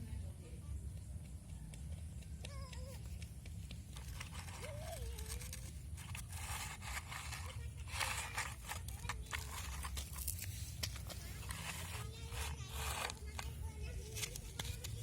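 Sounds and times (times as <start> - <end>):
toy excavator scraping sand: 3.9 - 15.0.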